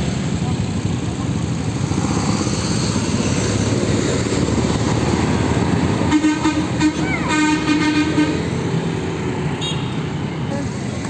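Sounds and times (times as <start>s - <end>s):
heavy vehicle engine: 0.0s - 11.0s
multi-tone bus air horn: 6.0s - 8.6s, 9.6s - 10.0s.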